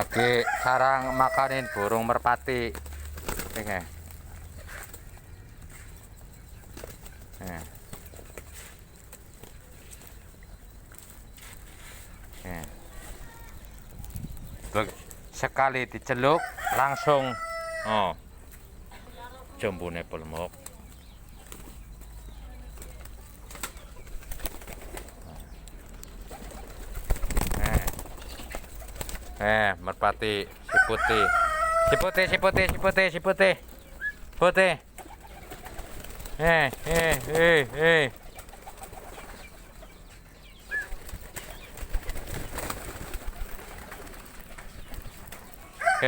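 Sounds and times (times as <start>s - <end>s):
wings fluttering: 0.0s - 15.4s, 20.2s - 29.5s, 30.7s - 39.9s, 40.6s - 46.0s
pigeon wings flapping: 2.7s - 4.2s, 22.8s - 25.2s, 26.3s - 29.4s, 35.0s - 39.4s, 40.8s - 45.7s
pigeons cooing: 30.5s - 46.0s.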